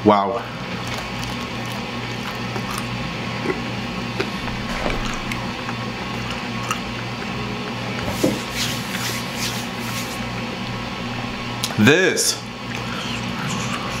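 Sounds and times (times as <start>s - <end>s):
wet chewing sounds: 0.7s - 8.0s, 12.7s - 14.0s.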